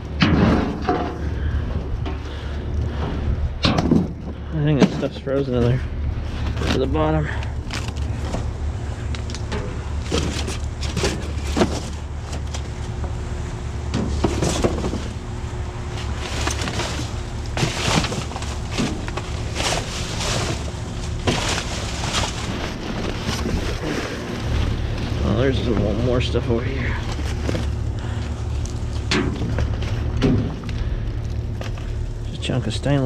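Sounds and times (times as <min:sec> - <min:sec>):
debris knocking in metal dumpster: 0:00.1 - 0:01.2.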